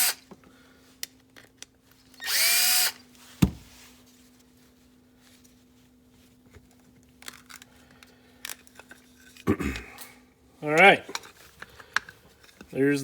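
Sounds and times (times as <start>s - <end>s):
power drill whirring: 0.0s - 0.2s, 2.2s - 3.1s.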